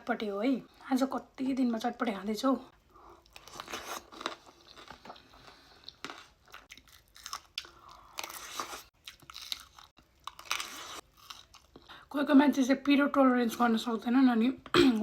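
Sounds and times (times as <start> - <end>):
person chewing crunchy snack: 3.2 - 11.9.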